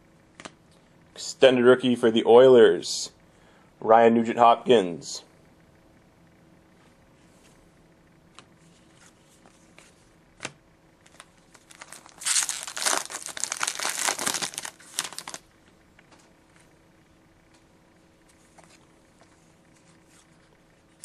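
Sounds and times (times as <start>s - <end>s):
foil wrapper tearing and crinkling: 11.1s - 15.4s.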